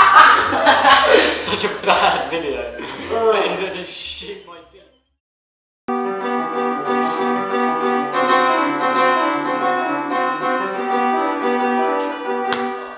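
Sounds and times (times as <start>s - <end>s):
piano: 5.9s - 12.9s.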